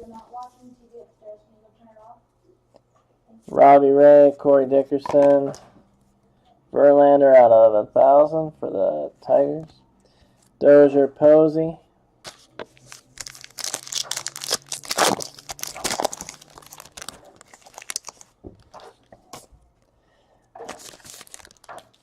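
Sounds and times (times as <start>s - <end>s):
card pack wrapper tearing and crinkling: 12.3s - 19.5s, 20.6s - 22.0s.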